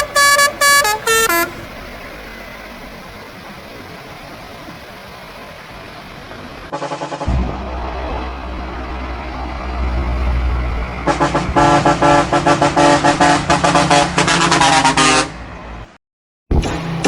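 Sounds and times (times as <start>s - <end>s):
multi-tone air horn toots: 0.0s - 2.1s, 6.7s - 15.4s
truck engine rumbling: 0.0s - 17.0s.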